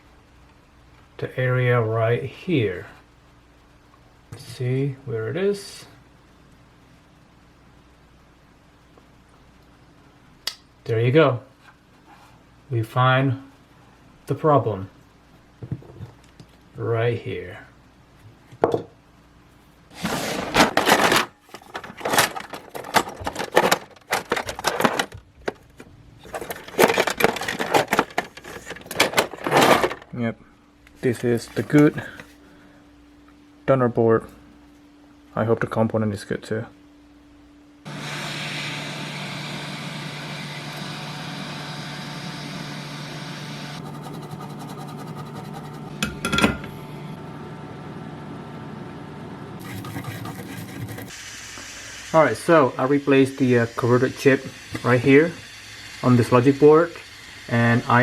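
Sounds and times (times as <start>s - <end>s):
objects rustling and clattering: 19.9s - 30.2s
hot-air station blowing: 37.9s - 58.0s.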